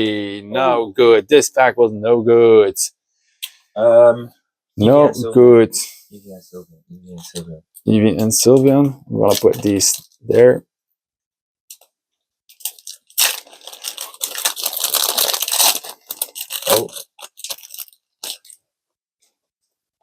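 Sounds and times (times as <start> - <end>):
foil wrapper crinkling and tearing: 12.5 - 18.6.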